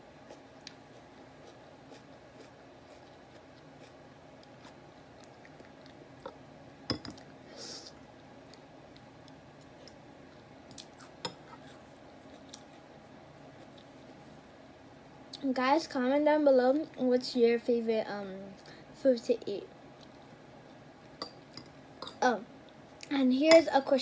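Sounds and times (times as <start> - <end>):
chewing: 0.3 - 6.4, 8.5 - 12.8.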